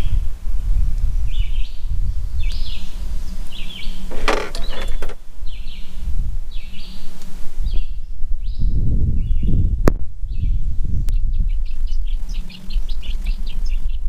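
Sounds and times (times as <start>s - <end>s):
bird chirping: 1.2s - 9.7s, 10.3s - 14.0s
clatter of something hard: 4.1s - 5.2s.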